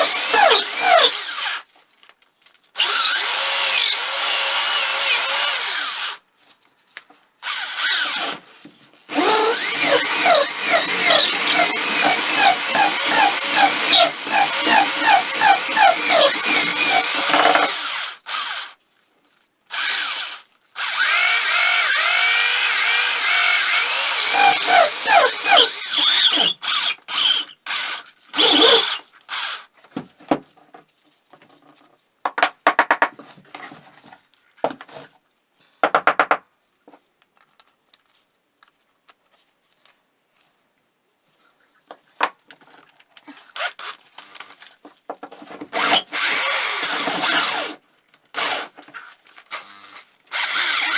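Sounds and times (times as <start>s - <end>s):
handheld power tool running: 0.0s - 1.6s, 2.8s - 6.1s, 9.1s - 18.6s, 19.7s - 29.6s, 45.8s - 47.8s, 49.5s - 50.9s.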